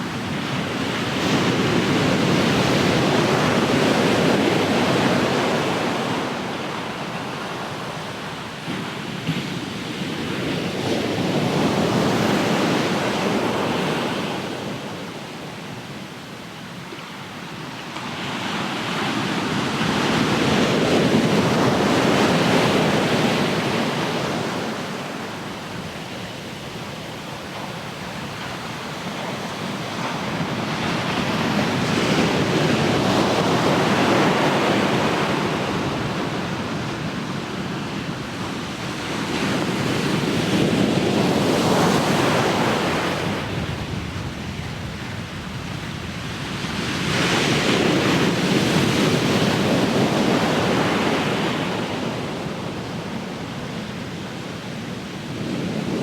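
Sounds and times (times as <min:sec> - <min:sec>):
ocean waves breaking: 0:17.2 - 0:56.0.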